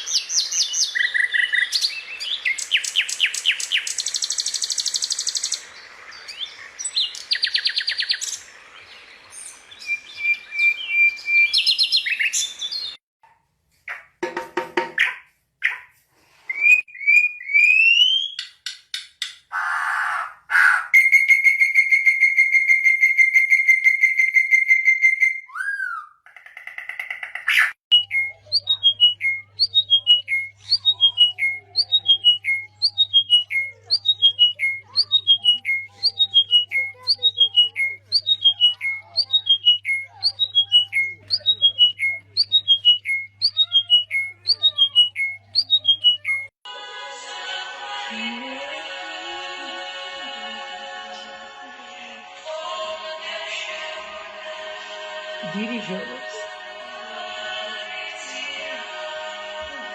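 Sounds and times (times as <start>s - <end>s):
bird whistling descending notes: 16.5s - 18.5s, 19.5s - 26.2s
bird calling with trill: 19.5s - 46.5s.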